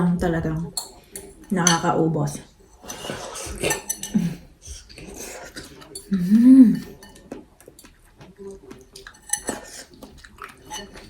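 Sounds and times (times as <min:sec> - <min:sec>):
cutlery clinking on a plate: 0:02.8 - 0:04.4, 0:06.8 - 0:08.0, 0:08.9 - 0:11.0
person humming: 0:06.1 - 0:06.9.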